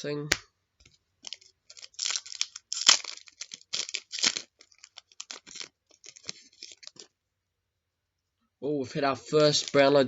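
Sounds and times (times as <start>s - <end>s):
cards crinkling and rustling: 0.8s - 7.2s, 9.2s - 10.0s.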